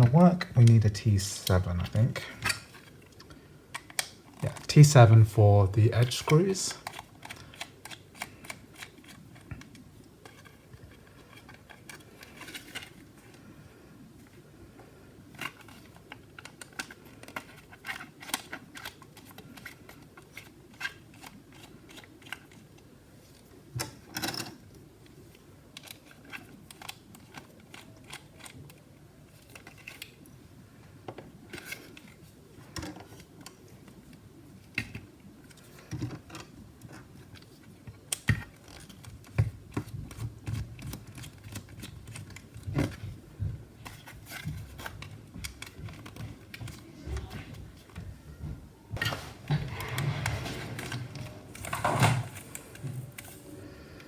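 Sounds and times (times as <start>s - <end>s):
metal parts knocking and thumping: 49.0s - 53.4s.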